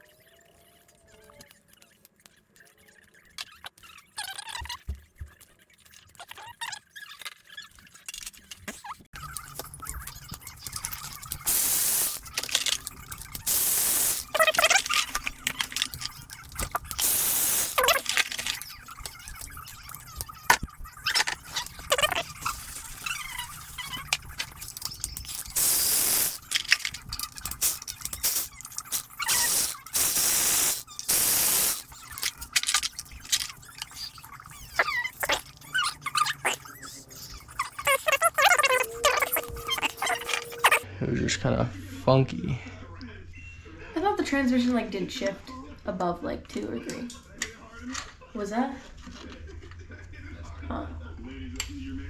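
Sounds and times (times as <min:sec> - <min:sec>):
metal parts clicking and clattering: 0:01.2 - 0:40.8
short squeaky tones: 0:08.8 - 0:40.8
spray hiss bursts: 0:11.5 - 0:12.2, 0:13.5 - 0:14.6, 0:17.0 - 0:18.0, 0:25.6 - 0:26.4, 0:27.6 - 0:31.9.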